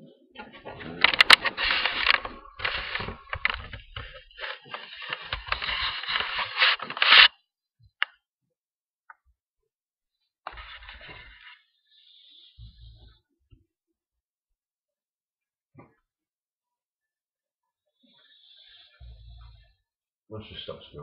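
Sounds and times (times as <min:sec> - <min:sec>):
dog snoring: 0:18.2 - 0:19.8.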